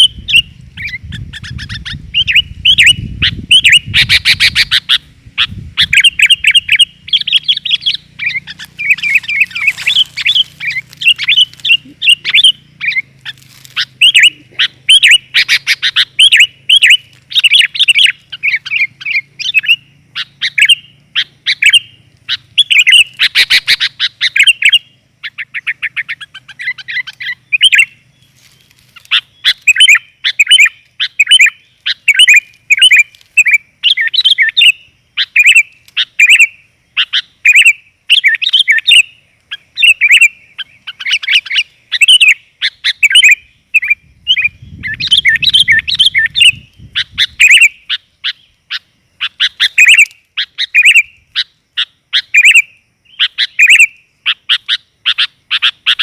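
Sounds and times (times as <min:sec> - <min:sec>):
bulbul chirping: 0:00.0 - 0:28.3, 0:29.0 - 0:56.0.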